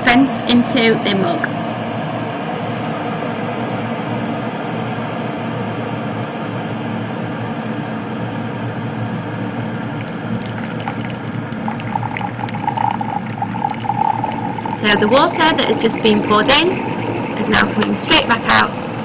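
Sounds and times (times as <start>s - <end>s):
water crackling and spitting: 9.5s - 18.0s
water heating rushing noise: 9.5s - 19.0s.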